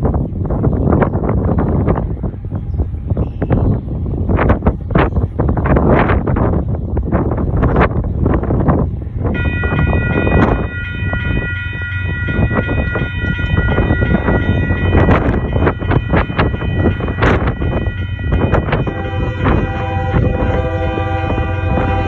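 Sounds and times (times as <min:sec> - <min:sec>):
heavy rumble of passing train: 0:00.0 - 0:22.0
wheels clicking on rail: 0:00.0 - 0:22.0
locomotive air horn chord: 0:09.4 - 0:22.0.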